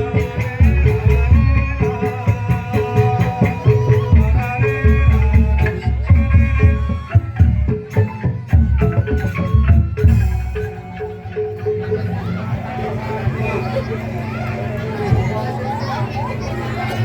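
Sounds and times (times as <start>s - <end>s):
band music: 0.0s - 17.0s
driving percussion: 0.0s - 17.0s.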